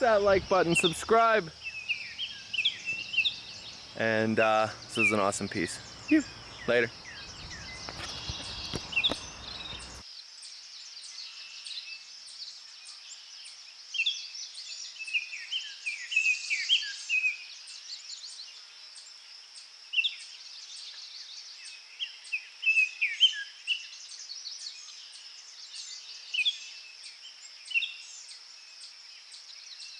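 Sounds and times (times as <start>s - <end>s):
birds chirping: 0.0s - 10.0s.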